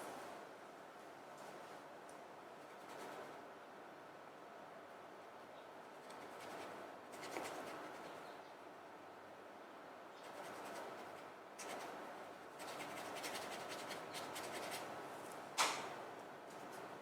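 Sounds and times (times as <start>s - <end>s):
paintbrush scratching on paper: 12.6s - 14.9s.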